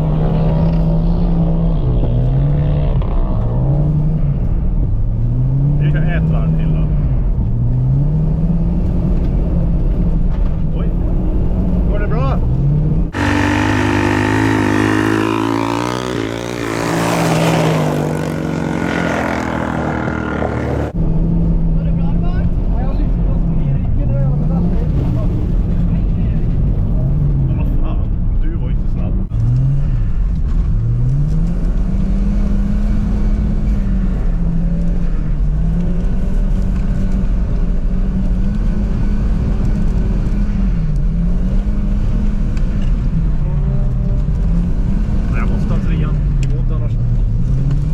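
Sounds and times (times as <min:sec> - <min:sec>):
car engine running hard: 0:00.0 - 0:47.9
car engine revving: 0:10.9 - 0:21.7.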